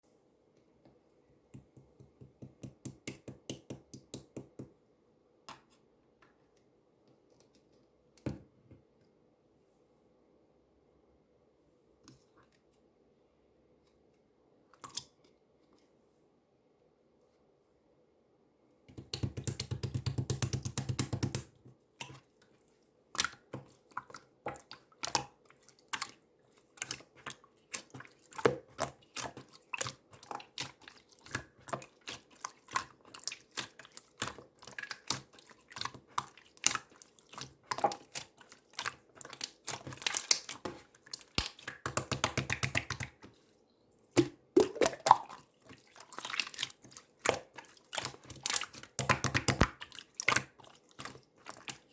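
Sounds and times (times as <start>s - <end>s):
wet clicks and small pops: 18.9s - 22.2s, 33.6s - 43.2s, 46.2s - 51.8s
slime squishing: 18.9s - 43.5s, 44.2s - 51.9s.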